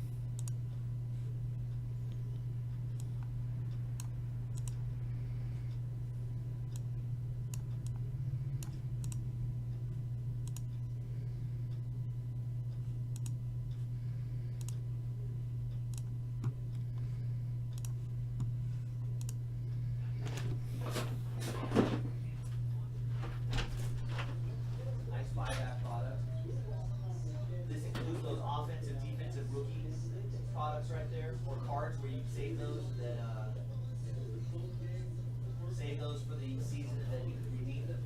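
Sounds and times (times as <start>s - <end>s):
low hum: 0.0s - 38.0s
sharp clicks: 0.4s - 0.6s, 4.0s - 4.8s, 7.5s - 8.0s, 8.6s - 9.2s, 10.4s - 10.8s, 13.1s - 13.4s, 14.6s - 14.8s, 17.7s - 18.5s, 19.2s - 19.4s.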